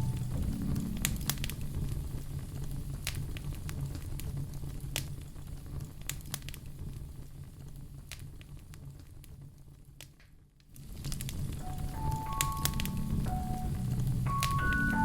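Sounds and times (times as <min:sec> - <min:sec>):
fire crackling and popping: 0:00.0 - 0:15.0
low rumble of flames: 0:00.0 - 0:15.0.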